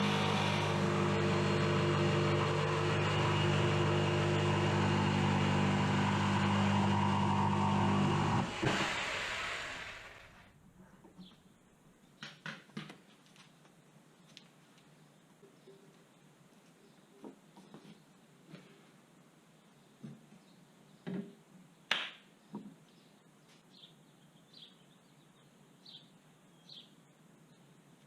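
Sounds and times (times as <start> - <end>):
power tool motor running: 0.0 - 10.4.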